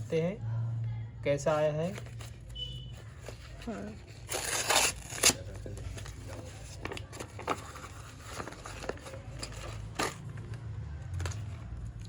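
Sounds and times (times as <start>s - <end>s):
packaging rustling and clicking: 3.2s - 12.0s.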